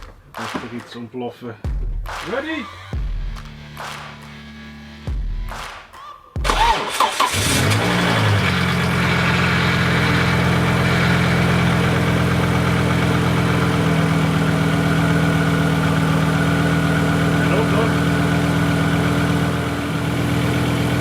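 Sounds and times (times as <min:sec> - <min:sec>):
car engine starting and idling: 0:06.4 - 0:21.0.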